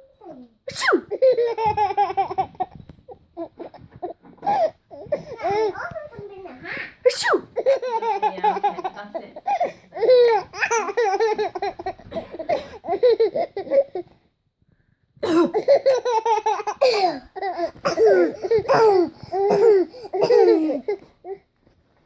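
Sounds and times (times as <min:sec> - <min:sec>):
fake sneezes: 0:00.7 - 0:01.2, 0:07.0 - 0:07.6, 0:15.2 - 0:15.6
baby laughing: 0:00.7 - 0:02.8, 0:07.3 - 0:14.0, 0:15.3 - 0:21.4.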